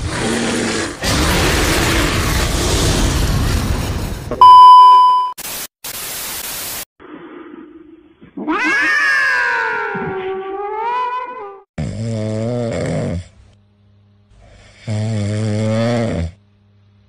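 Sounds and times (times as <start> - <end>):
loud steady beep: 4.4 - 5.4
static hiss: 5.4 - 6.9
cat meowing: 8.4 - 11.6.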